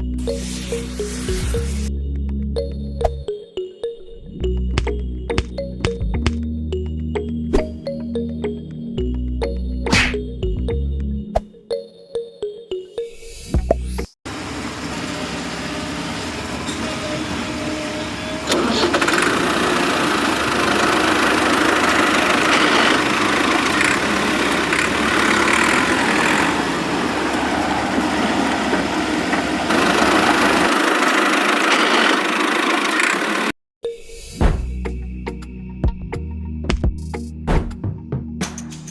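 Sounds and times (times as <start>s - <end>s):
engine running: 14.3s - 33.6s.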